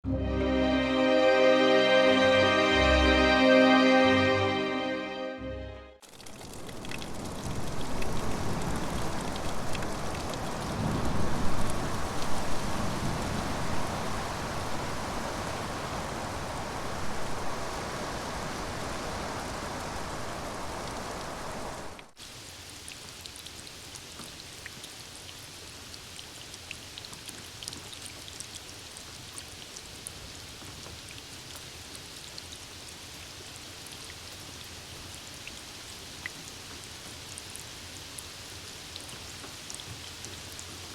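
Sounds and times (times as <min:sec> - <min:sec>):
raindrops ticking and pattering: 0:06.0 - 0:13.2, 0:19.9 - 0:40.9
steady rainfall: 0:06.0 - 0:40.9.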